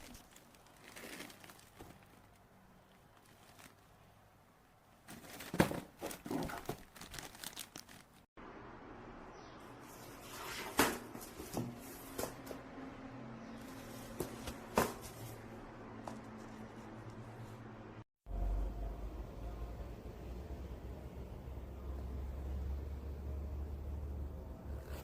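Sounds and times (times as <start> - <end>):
plastic packaging crinkling: 0.0 - 4.1, 5.1 - 8.3.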